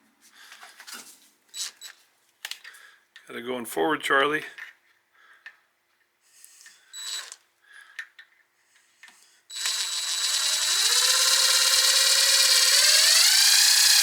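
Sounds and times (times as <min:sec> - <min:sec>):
electric drill whining: 0:07.0 - 0:07.4, 0:09.5 - 0:14.0.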